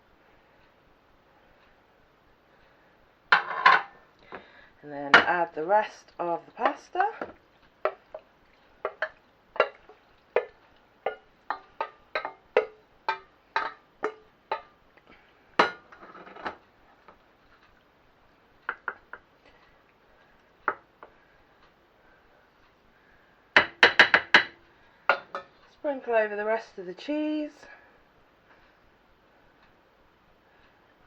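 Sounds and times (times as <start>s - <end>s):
utensil knocking against pan: 6.6s - 14.7s, 18.7s - 19.2s, 23.6s - 25.5s.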